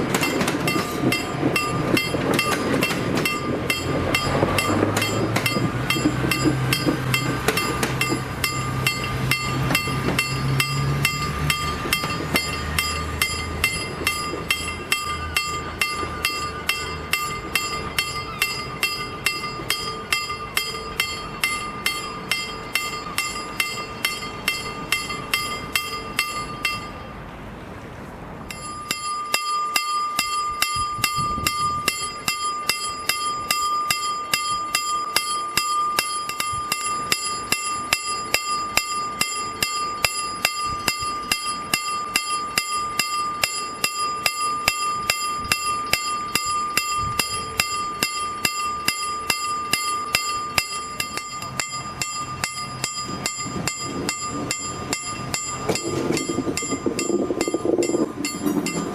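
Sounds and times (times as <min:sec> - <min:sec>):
railway crossing bell ringing: 0:00.0 - 0:27.6, 0:28.2 - 0:58.9.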